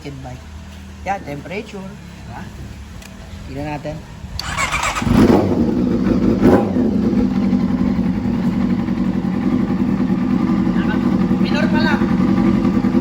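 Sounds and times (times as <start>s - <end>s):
motorcycle engine revving and idling: 0.6s - 13.0s
electric starter cranking: 4.4s - 5.4s.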